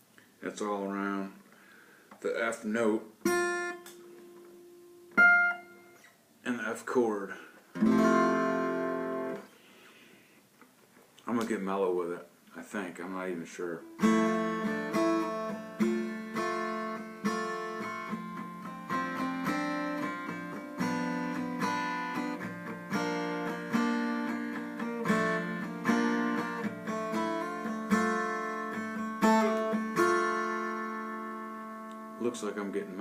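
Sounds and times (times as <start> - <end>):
guitar chords plucked and strummed: 3.2 - 6.2, 7.8 - 9.5, 13.8 - 33.0.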